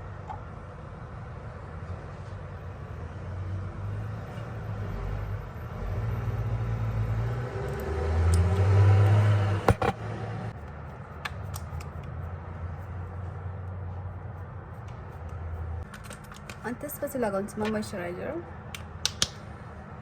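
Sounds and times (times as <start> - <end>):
vehicle engine rumble passing: 1.1 - 15.8
sharp clicks: 18.8 - 19.4.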